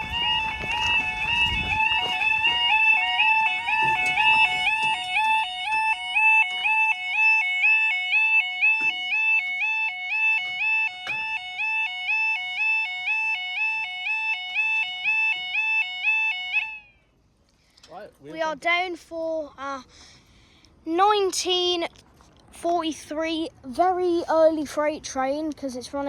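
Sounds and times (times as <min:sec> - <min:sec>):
level crossing alarm warbling: 0:00.0 - 0:16.9.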